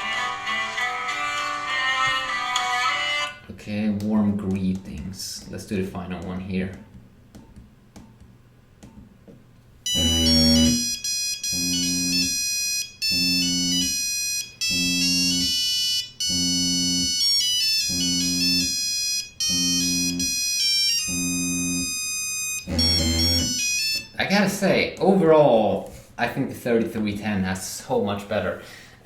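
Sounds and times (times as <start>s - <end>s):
mobile phone ringtone melody: 9.9s - 24.1s.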